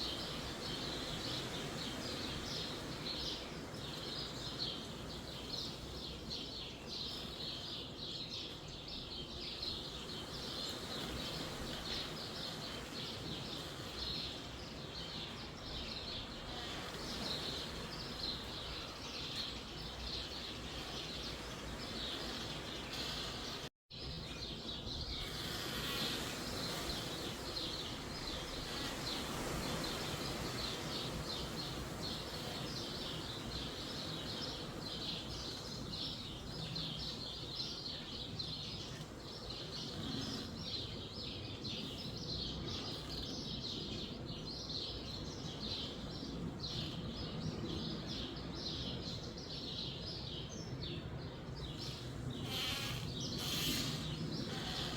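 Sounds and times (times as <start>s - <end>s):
small birds chirping: 0.0s - 54.9s
wind in a forest: 0.0s - 54.9s.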